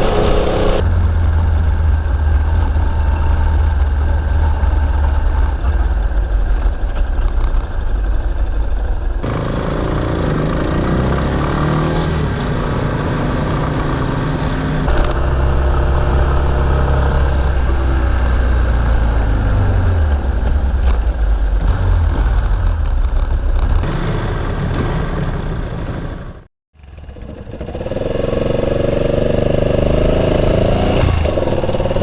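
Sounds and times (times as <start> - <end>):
motorcycle engine running: 9.2 - 32.0.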